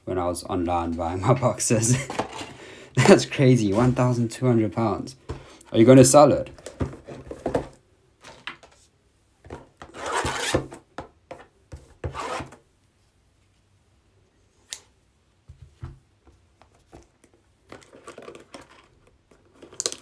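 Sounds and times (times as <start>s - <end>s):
card scrapes and clicks: 9.9s - 10.8s, 12.0s - 12.6s.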